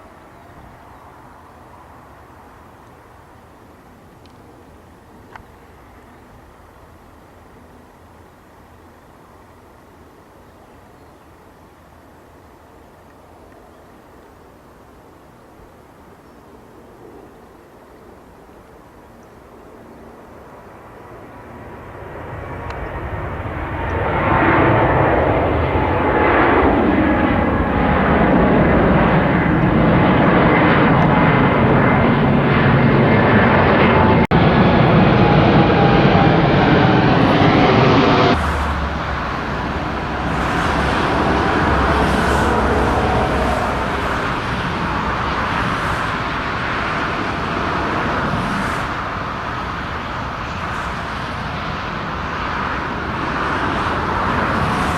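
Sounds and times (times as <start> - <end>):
jet aircraft engines passing: 0.0 - 54.9
deep aircraft rumble: 18.2 - 54.9.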